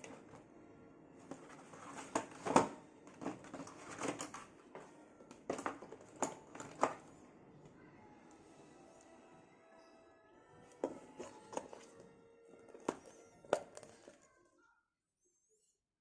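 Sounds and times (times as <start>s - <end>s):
packaging rustling: 1.3s - 4.6s.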